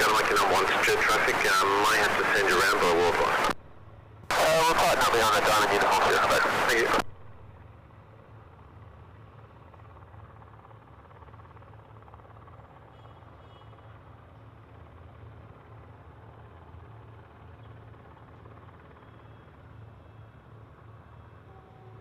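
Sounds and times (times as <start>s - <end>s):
constant low hum: 0.0s - 22.0s.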